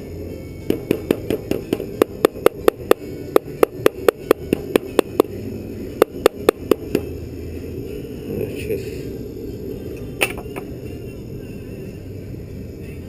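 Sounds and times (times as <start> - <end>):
hammer tapping on metal: 0.7 - 5.3.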